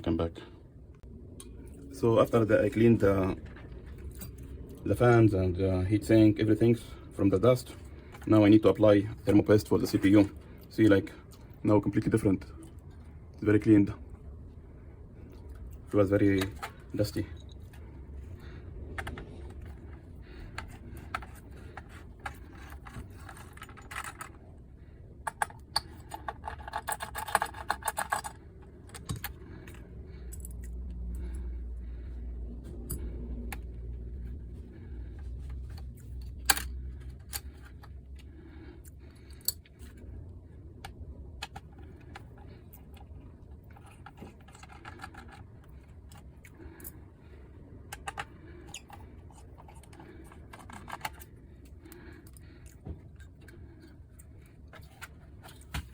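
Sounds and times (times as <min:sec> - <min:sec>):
metal parts clicking and jangling: 0:01.4 - 0:05.3, 0:15.3 - 0:24.6, 0:25.2 - 0:40.2, 0:40.8 - 0:55.9.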